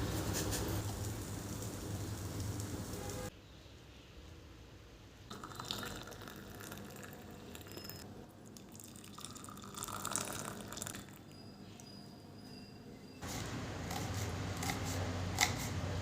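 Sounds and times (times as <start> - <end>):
water running and splashing: 0.8 - 3.3.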